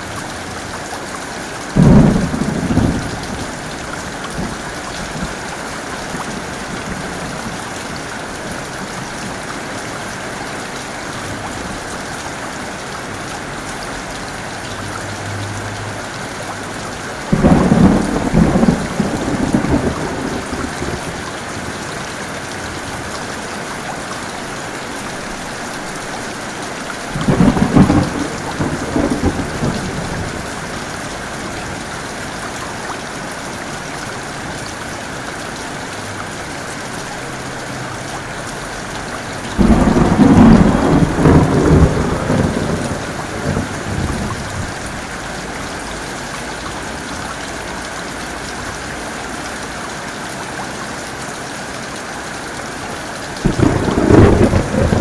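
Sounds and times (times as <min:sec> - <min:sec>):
heavy rain falling: 0:00.0 - 0:55.0
loud thunder peals: 0:01.8 - 0:03.5, 0:27.2 - 0:30.5, 0:39.6 - 0:44.8, 0:53.4 - 0:55.0.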